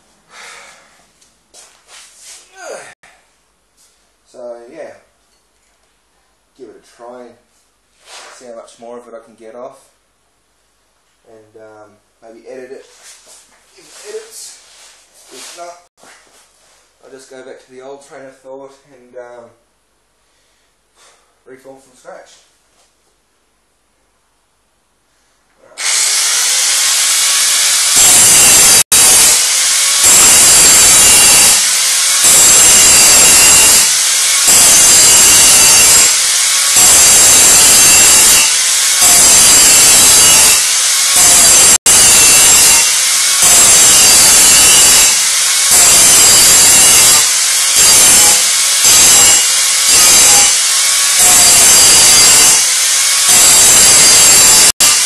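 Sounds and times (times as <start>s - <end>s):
angle grinder cutting sheet metal: 25.8s - 55.0s.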